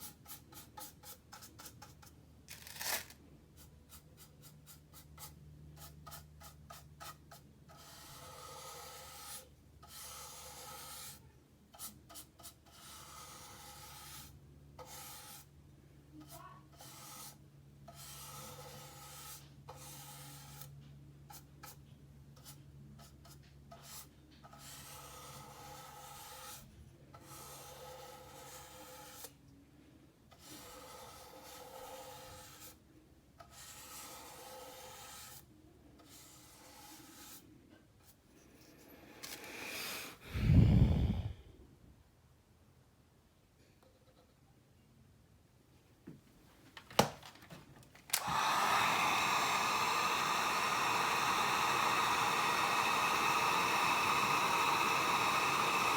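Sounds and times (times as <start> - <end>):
scratchy rubbing strokes: 0.0 - 11.2, 11.8 - 15.5, 16.3 - 20.7, 22.4 - 29.4, 30.4 - 32.8, 33.4 - 40.9.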